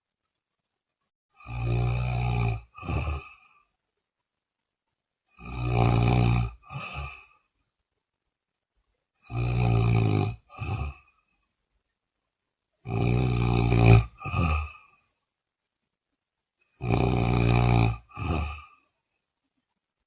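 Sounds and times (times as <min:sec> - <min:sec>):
person snoring loudly: 0:01.3 - 0:03.6, 0:05.3 - 0:07.4, 0:09.2 - 0:11.2, 0:12.8 - 0:15.0, 0:16.7 - 0:18.8.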